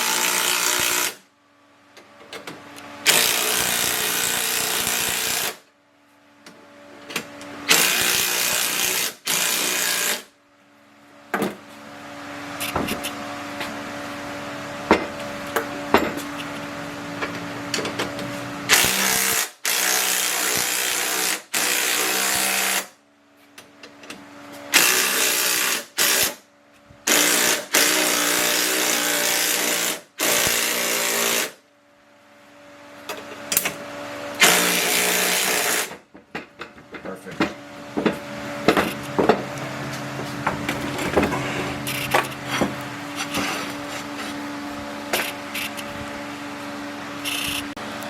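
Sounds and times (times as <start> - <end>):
power drill bursts: 3.1 - 5.6, 7.7 - 10.2, 18.7 - 22.9, 24.7 - 26.4, 34.4 - 35.9.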